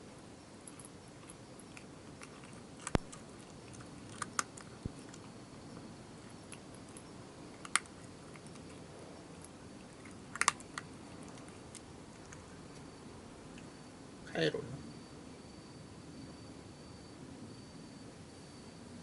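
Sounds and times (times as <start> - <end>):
cat crunching dry food: 0.5 - 13.7.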